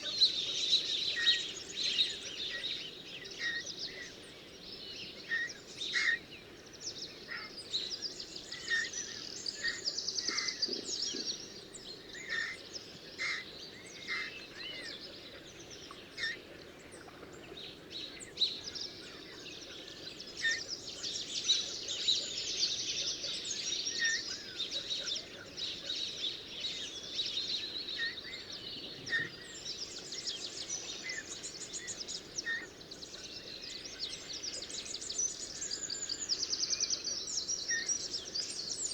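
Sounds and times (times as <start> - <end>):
faint outdoor background: 0.0 - 38.9
small birds chirping and trilling: 17.0 - 38.9.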